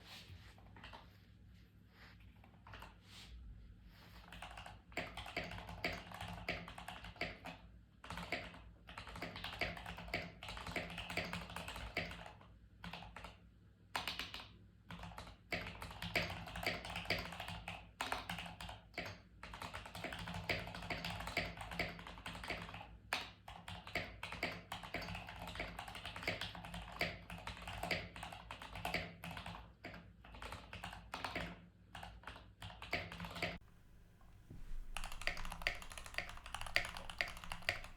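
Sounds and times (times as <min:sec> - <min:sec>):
mechanical keyboard typing: 0:04.4 - 0:12.3, 0:19.5 - 0:29.7, 0:30.3 - 0:33.6, 0:34.6 - 0:37.9.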